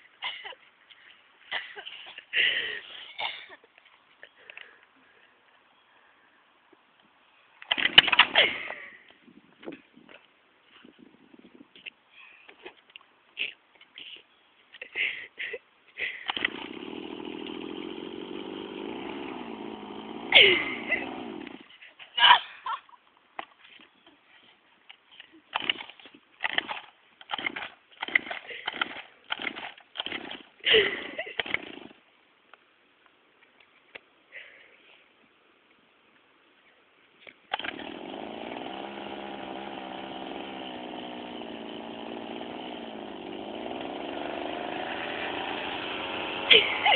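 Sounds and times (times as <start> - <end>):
engine turning over: 16.2 - 21.7, 25.6 - 30.5, 31.4 - 32.0, 37.5 - 46.9.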